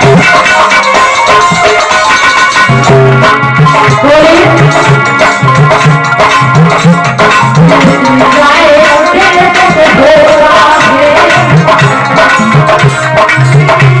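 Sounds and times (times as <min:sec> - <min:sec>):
wavering melodic line: 0:00.0 - 0:11.0
devotional music: 0:00.0 - 0:14.0
tabla drumming: 0:00.0 - 0:14.0.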